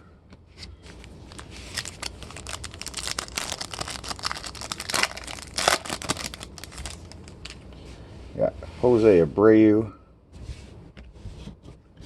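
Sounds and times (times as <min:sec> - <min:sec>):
foil wrapper tearing and crinkling: 0:01.3 - 0:07.6.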